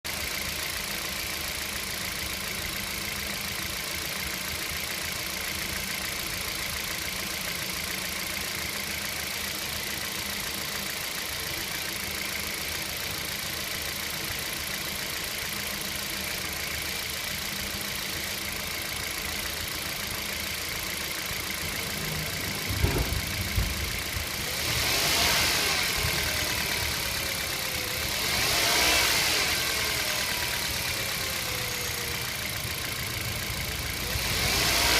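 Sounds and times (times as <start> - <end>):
car engine idling and revving: 0.1 - 34.9
low thuds: 22.5 - 24.4.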